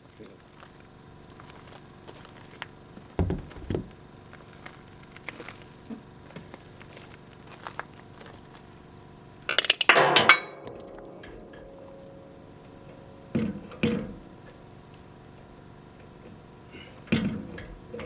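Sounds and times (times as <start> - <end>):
metal parts knocking: 3.2 - 4.0, 9.6 - 14.3
metal rattling clatter: 3.2 - 4.0, 9.5 - 16.2.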